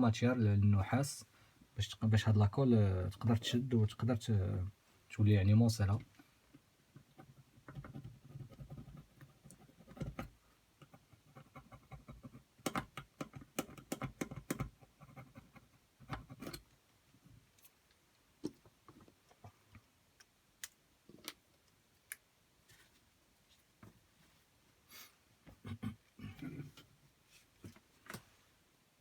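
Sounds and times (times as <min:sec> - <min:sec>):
tool scraping circuit board: 0:13.5 - 0:16.6.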